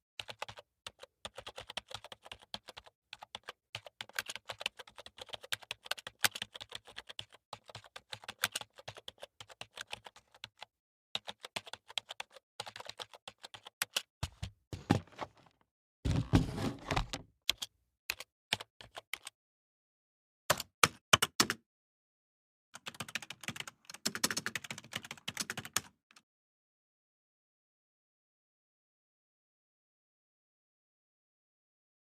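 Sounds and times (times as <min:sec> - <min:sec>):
typing on computer keyboard: 0:00.2 - 0:14.5, 0:17.5 - 0:19.4, 0:20.5 - 0:21.6, 0:22.8 - 0:26.0.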